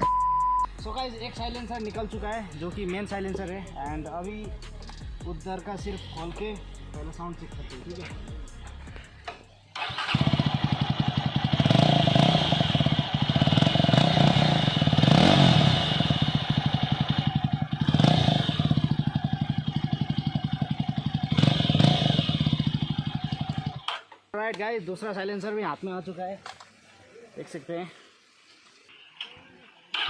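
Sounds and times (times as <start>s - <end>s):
unmuffled motorcycle engine revving: 0.7s - 24.0s.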